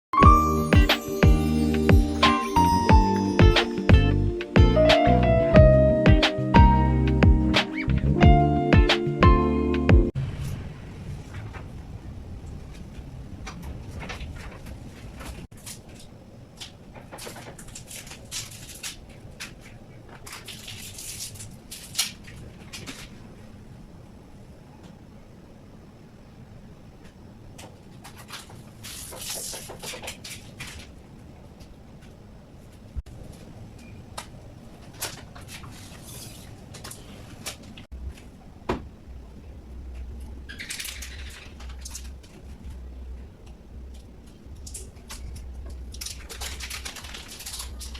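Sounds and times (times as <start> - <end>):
low hum: 0.2 - 13.4, 37.9 - 47.9
rustling scrape: 17.0 - 23.2, 28.0 - 31.0, 34.9 - 38.2
rustling crinkling handling noise: 43.9 - 47.9.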